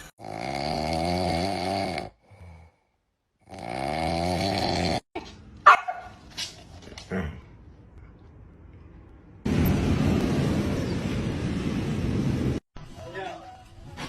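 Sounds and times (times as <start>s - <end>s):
dog snoring: 0.2s - 2.6s, 3.4s - 5.1s.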